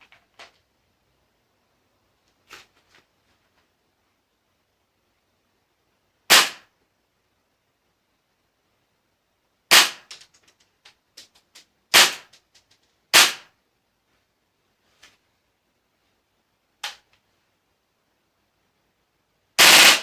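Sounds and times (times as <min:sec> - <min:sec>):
airsoft gun shots cracking: 0:06.3 - 0:06.7, 0:09.7 - 0:10.1, 0:11.9 - 0:12.3, 0:13.1 - 0:13.5, 0:19.6 - 0:20.0.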